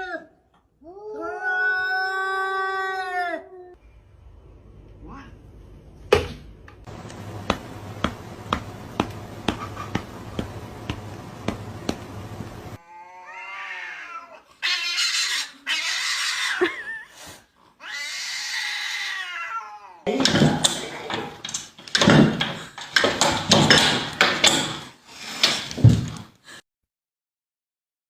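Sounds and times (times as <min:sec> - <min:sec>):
cats yowling: 0:00.0 - 0:03.8, 0:12.8 - 0:17.0, 0:17.8 - 0:20.1
low hum: 0:06.9 - 0:12.8
sharp taps: 0:06.9 - 0:12.8.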